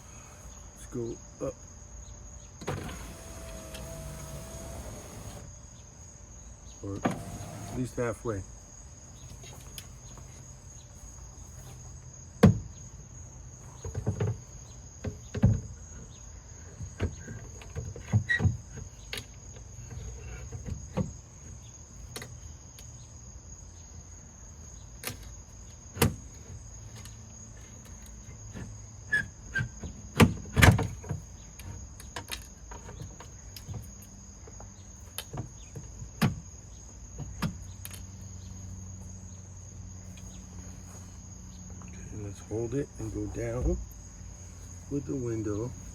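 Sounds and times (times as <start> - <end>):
crickets chirping: 0.0 - 45.9.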